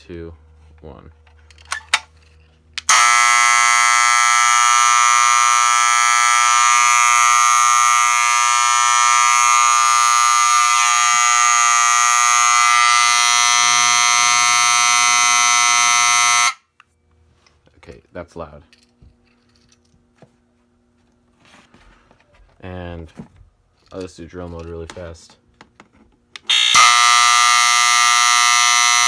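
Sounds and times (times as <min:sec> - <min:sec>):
fire alarm horn steady tone: 0:02.8 - 0:16.7, 0:26.5 - 0:29.0.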